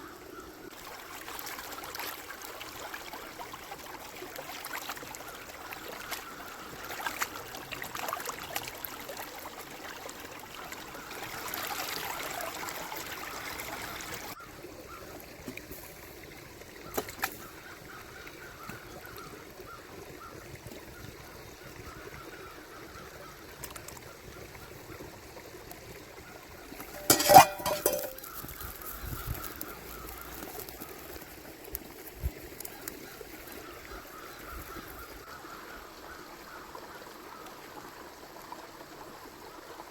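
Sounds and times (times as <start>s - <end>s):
river flowing: 26.8s - 28.4s.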